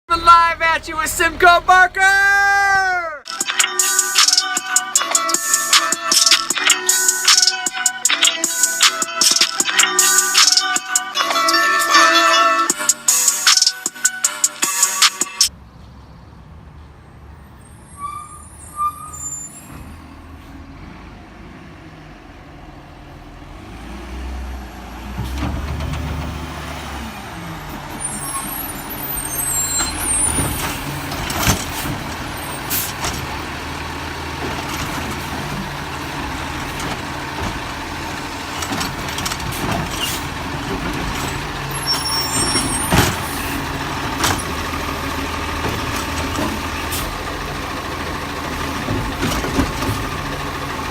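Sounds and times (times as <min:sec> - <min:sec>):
garbage truck diesel engine running: 0:00.1 - 0:02.2, 0:18.5 - 0:50.9.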